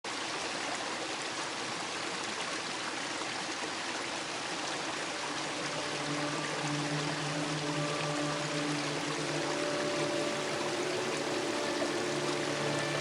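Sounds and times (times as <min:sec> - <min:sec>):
river water rushing: 0:00.2 - 0:13.0
music: 0:05.0 - 0:13.0.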